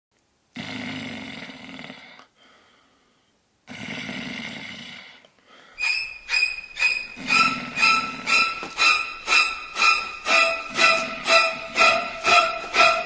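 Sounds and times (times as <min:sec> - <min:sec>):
person snoring: 0:00.6 - 0:02.3
faint breath: 0:02.4 - 0:03.4, 0:05.4 - 0:05.9
music with short repeating notes: 0:05.8 - 0:13.0.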